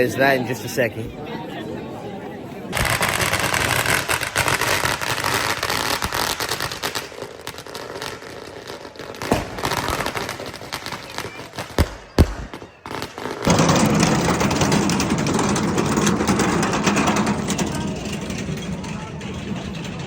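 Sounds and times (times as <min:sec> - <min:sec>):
noisy crowd: 0:00.0 - 0:20.0
firecracker crackles: 0:02.7 - 0:20.0
firecracker bangs: 0:02.8 - 0:17.5.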